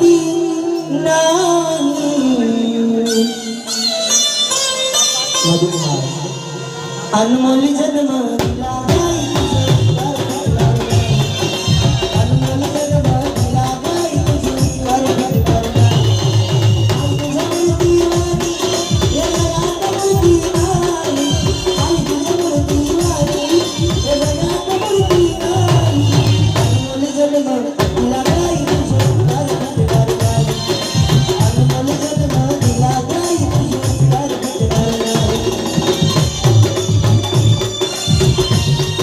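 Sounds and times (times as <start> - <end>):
folk instrument melody: 2.0 - 39.0
drum beat: 8.4 - 27.0, 27.8 - 39.0
jingling percussion: 8.8 - 39.0.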